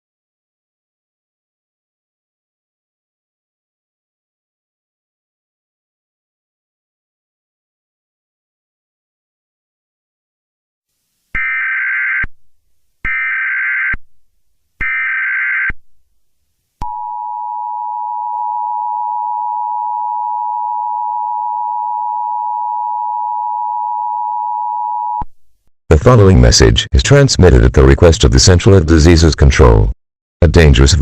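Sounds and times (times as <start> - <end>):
digital data squawks: 11.4 - 12.3.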